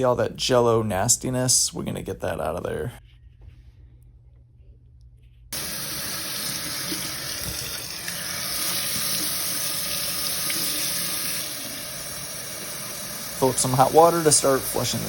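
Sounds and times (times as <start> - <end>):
water running from a tap: 5.6 - 15.0.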